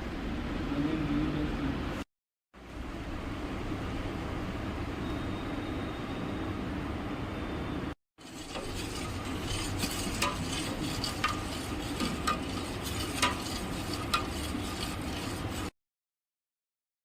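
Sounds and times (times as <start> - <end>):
syrup hissing in a pan: 8.2 - 15.7.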